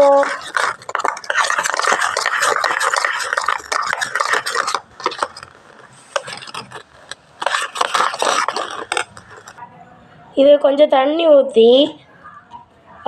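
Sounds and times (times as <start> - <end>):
scattered taps: 0.0 - 9.6
spoon scraping batter in a cup: 0.0 - 9.6.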